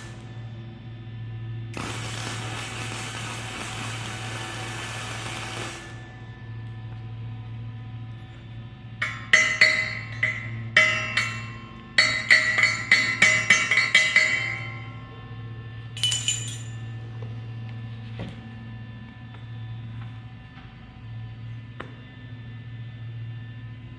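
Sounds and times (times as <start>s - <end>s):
low electrical hum: 6.0s - 23.0s
hammer striking steel: 9.0s - 16.8s.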